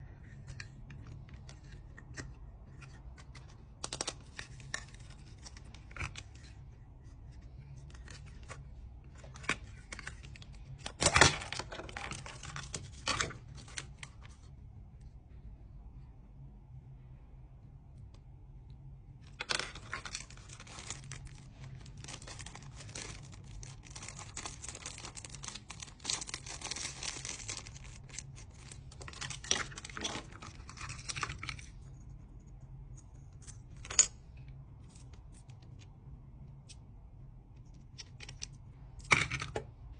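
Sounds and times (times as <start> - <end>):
packaging tearing and crinkling: 9.3 - 14.1, 19.4 - 31.7.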